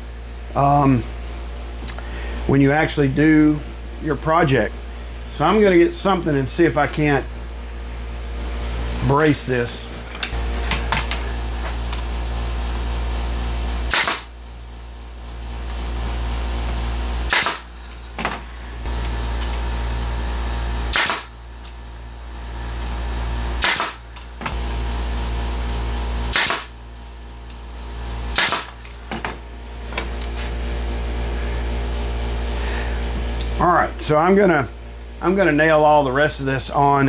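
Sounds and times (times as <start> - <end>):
steady low hum: 0.0 - 37.0
nail gun firing: 13.9 - 14.3, 17.3 - 17.8, 20.9 - 21.4, 23.6 - 24.1, 26.3 - 26.8, 28.3 - 29.0.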